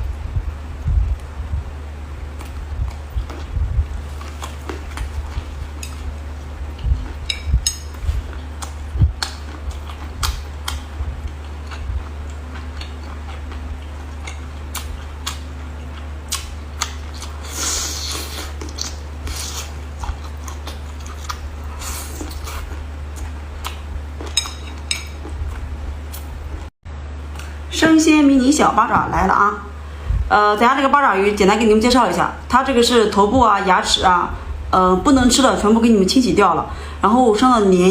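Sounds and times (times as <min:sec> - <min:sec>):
steady low hum: 0:00.0 - 0:37.9.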